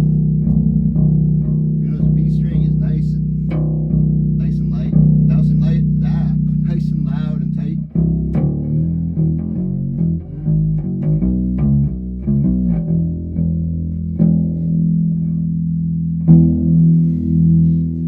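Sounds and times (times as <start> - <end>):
plucked fretless bass notes: 0.0 - 18.0.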